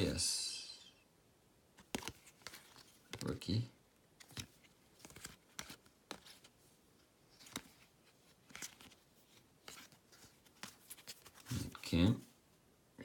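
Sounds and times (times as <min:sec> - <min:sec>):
trading cards flipped by hand: 0:01.8 - 0:03.4, 0:04.2 - 0:06.6, 0:07.3 - 0:11.9.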